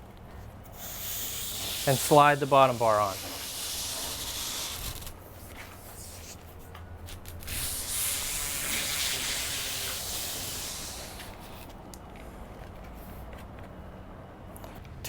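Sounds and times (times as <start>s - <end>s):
metal bar rubbing along fabric: 1.5s - 6.4s.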